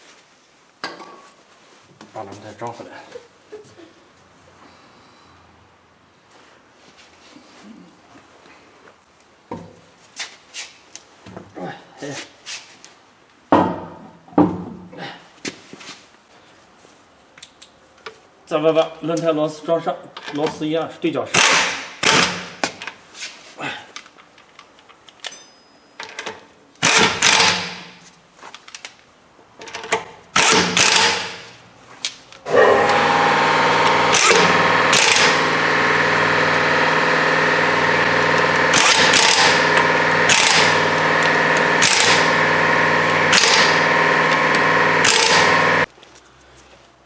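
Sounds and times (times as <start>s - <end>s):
impact wrench running: 21.4s - 22.6s, 26.8s - 28.0s, 30.4s - 31.6s, 32.4s - 45.9s.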